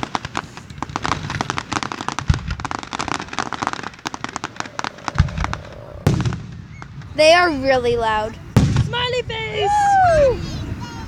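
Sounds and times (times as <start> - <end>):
deep booms of bursting shells: 0.0 - 7.4, 8.5 - 8.9
fireworks crackling pops: 0.0 - 9.2
sharp loud bang: 4.4 - 7.2.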